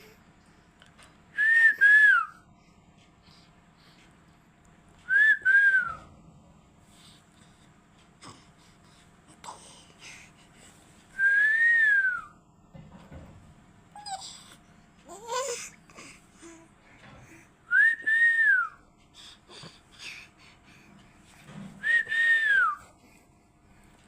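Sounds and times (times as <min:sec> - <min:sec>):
person whistling high notes: 0:21.8 - 0:22.8.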